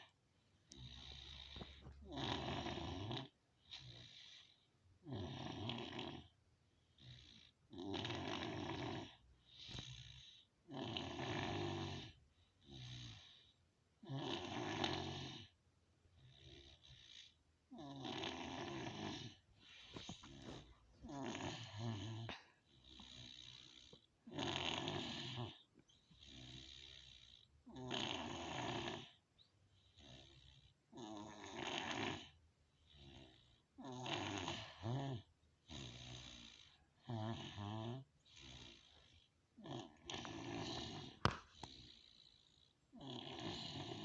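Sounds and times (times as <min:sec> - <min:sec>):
person snoring: 0:00.7 - 0:06.3, 0:07.0 - 0:13.4, 0:16.3 - 0:25.6, 0:31.0 - 0:42.0, 0:43.0 - 0:44.0.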